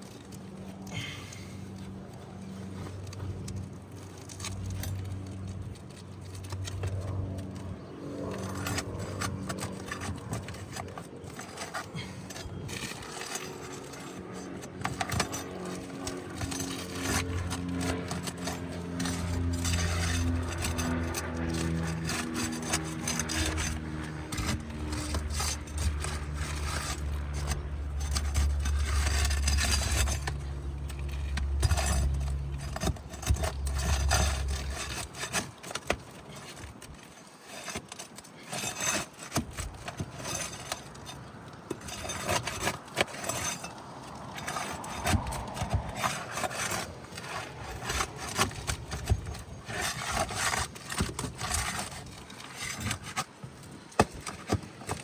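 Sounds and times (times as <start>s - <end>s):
steady low hum: 0.0s - 35.5s
tool scraping roof shingles: 0.0s - 55.0s.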